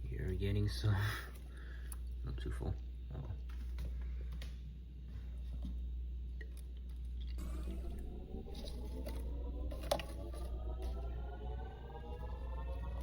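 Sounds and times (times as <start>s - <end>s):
rising tones: 7.4s - 13.0s.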